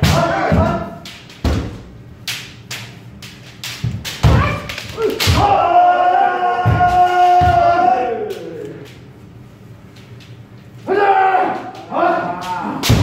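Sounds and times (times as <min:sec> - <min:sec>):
bamboo sword strikes: 0:03.6 - 0:05.6, 0:12.6 - 0:13.0
long held shout: 0:05.0 - 0:08.8, 0:10.8 - 0:13.0.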